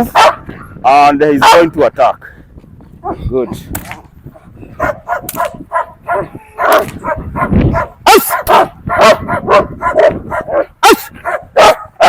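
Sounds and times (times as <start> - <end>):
dog barking loudly: 0.0 - 0.8, 1.4 - 1.7, 3.0 - 3.2, 4.4 - 12.0.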